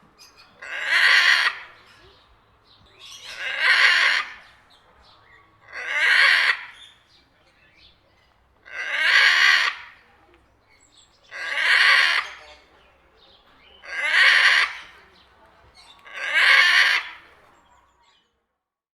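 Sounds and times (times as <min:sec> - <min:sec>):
parrot calling: 0:00.6 - 0:02.1, 0:03.0 - 0:04.5, 0:05.6 - 0:07.0, 0:08.6 - 0:10.0, 0:11.3 - 0:12.6, 0:13.8 - 0:15.0, 0:16.0 - 0:17.2.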